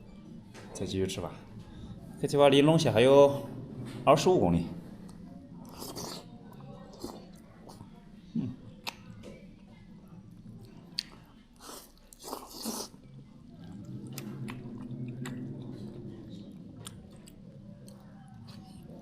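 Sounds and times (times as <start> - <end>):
person chewing noodles: 5.1 - 8.0, 10.3 - 19.0.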